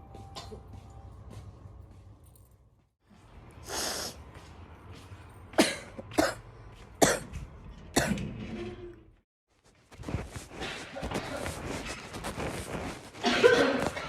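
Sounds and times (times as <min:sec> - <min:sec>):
girl coughing: 0:05.6 - 0:06.4, 0:07.0 - 0:07.3, 0:13.2 - 0:14.0.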